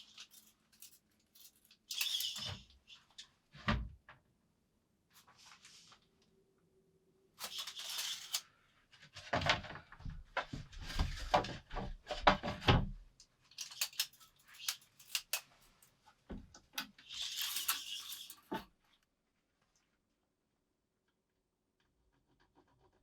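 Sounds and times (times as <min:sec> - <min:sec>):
scraping of hard objects: 0:17.0 - 0:18.6.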